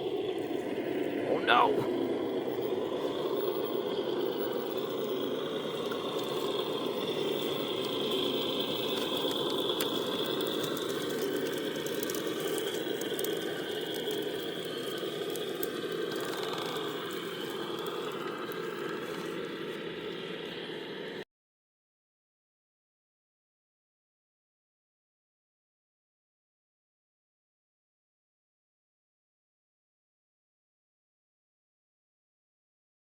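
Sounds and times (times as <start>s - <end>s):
electric motor whine: 1.9s - 21.2s
toy truck gears rattling: 4.1s - 20.2s.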